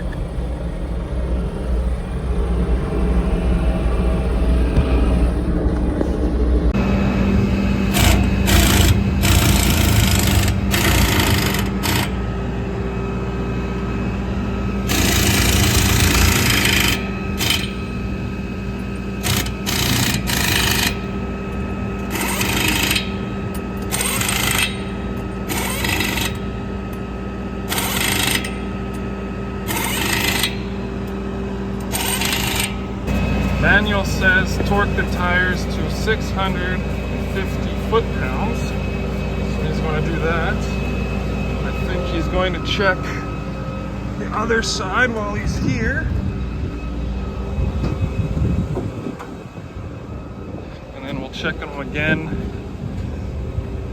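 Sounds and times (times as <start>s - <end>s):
engine running: 0.0s - 53.9s
impact wrench bursts: 7.9s - 12.2s, 14.8s - 18.0s, 18.7s - 29.0s, 29.6s - 31.2s, 31.8s - 40.9s.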